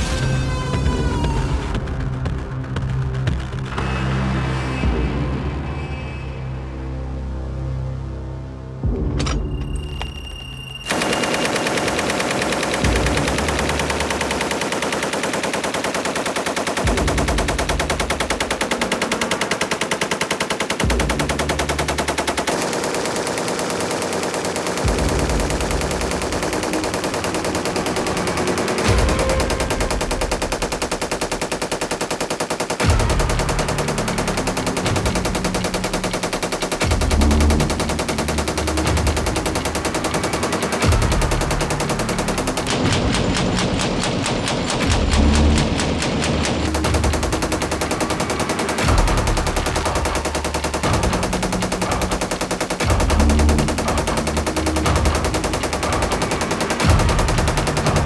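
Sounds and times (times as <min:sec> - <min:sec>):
machine gun automatic bursts: 0:10.9 - 0:58.0.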